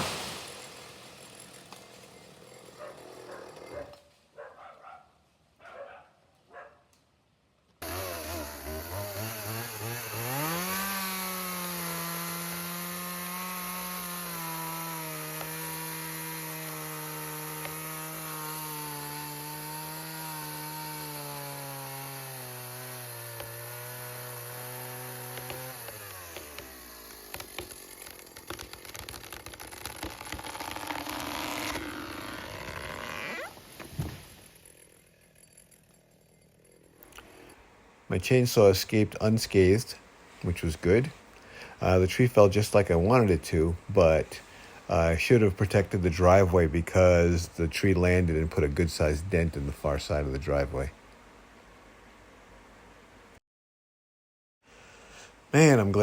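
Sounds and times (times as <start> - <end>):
tree cracking and snapping: 0.0 - 2.3, 24.6 - 34.6
chainsaw cutting tree trunk: 0.0 - 4.1, 7.8 - 37.5.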